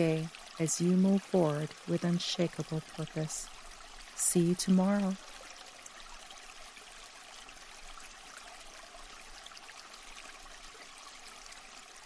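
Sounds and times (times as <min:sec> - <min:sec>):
stream water babbling: 0:00.0 - 0:12.0.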